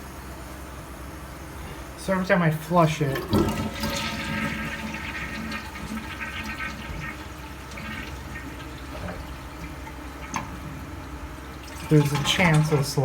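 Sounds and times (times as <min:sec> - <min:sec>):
toilet flushing: 0:01.4 - 0:13.0.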